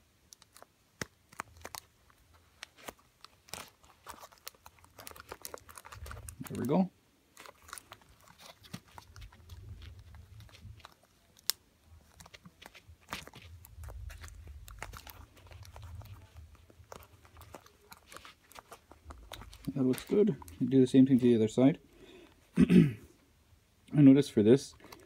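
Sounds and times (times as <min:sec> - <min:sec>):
crinkly rubbing of plastic: 0:00.3 - 0:22.5, 0:24.4 - 0:25.0.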